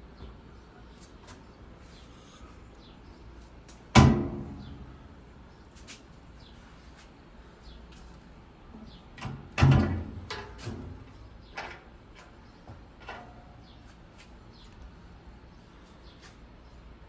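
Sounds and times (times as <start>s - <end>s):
door slamming shut: 4.0s - 4.7s, 9.6s - 10.3s.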